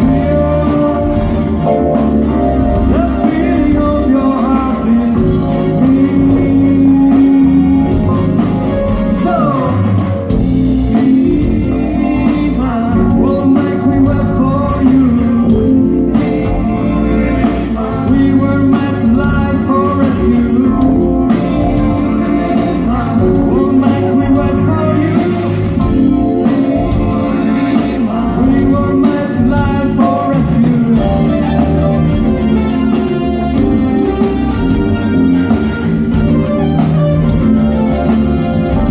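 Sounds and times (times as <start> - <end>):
electric guitars: 0.0 - 38.9
person singing: 0.0 - 38.9
steady drum beat: 0.0 - 38.9.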